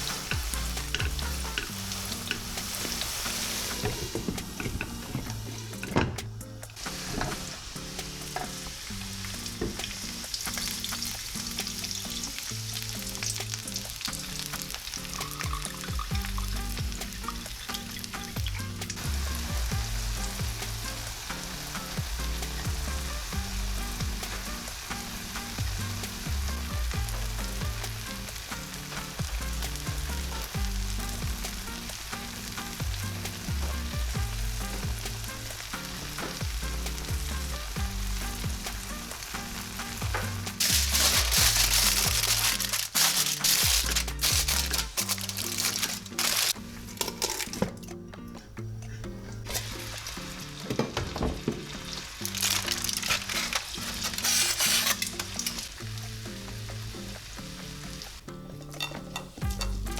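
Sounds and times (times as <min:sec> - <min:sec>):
food sizzling in a pan: 0:00.0 - 0:47.7, 0:49.5 - 0:59.9
background music: 0:00.0 - 0:59.9.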